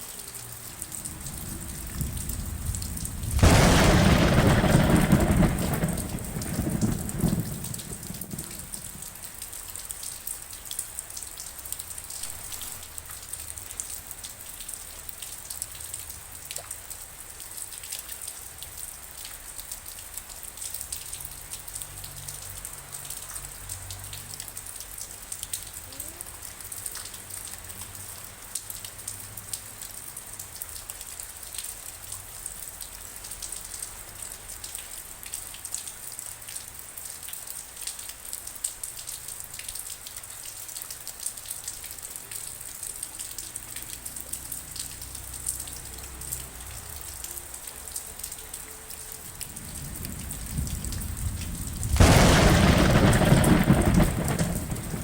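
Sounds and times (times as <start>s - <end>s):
rain pattering: 0.0s - 55.0s
thunder rumble: 0.5s - 9.4s, 49.3s - 55.0s
distant thunder: 0.7s - 9.3s, 49.3s - 55.0s.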